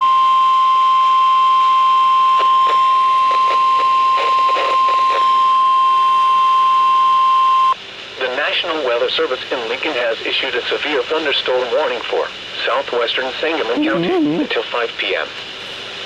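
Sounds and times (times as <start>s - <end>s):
radio hiss: 2.4s - 5.5s, 8.1s - 16.0s.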